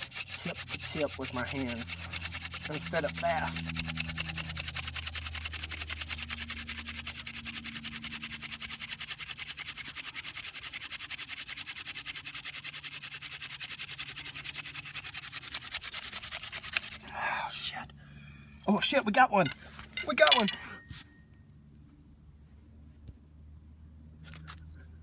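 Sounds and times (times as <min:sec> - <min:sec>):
rhythmic rubbing of wood on wood: 0:00.0 - 0:17.1.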